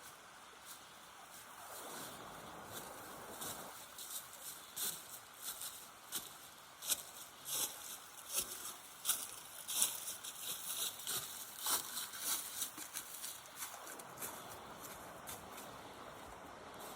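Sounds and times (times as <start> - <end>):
broom sweeping: 0.0 - 15.8
steady hiss: 0.0 - 16.9.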